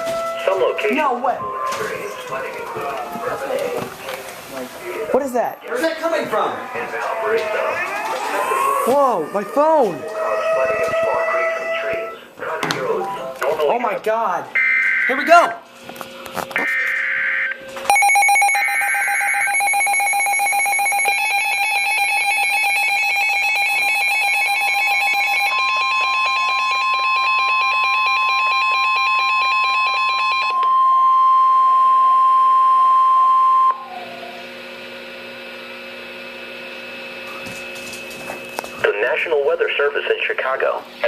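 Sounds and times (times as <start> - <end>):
steady high alarm tone: 0.0 - 4.2, 4.9 - 12.2, 14.5 - 38.6
rapid pulsing alarm beep: 16.7 - 33.9
steady hum: 30.6 - 41.0.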